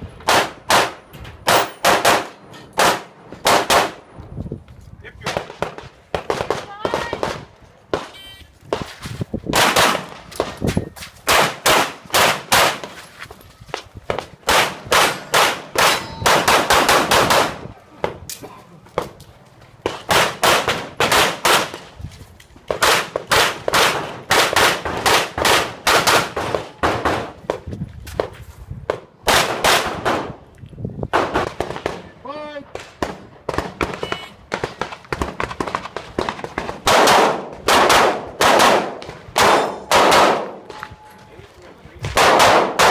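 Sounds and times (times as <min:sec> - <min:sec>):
metallic clangs: 0:02.4 - 0:02.8, 0:15.1 - 0:16.3
handgun shots: 0:36.9 - 0:40.6, 0:42.1 - 0:42.9.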